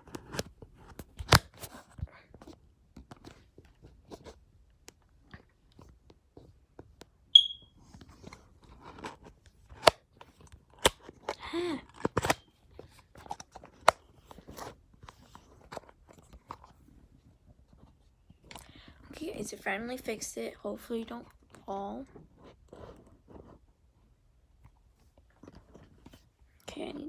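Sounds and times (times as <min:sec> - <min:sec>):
phone stand handling noise: 0:07.4 - 0:07.6, 0:12.0 - 0:12.4
short squeak: 0:07.4 - 0:07.7.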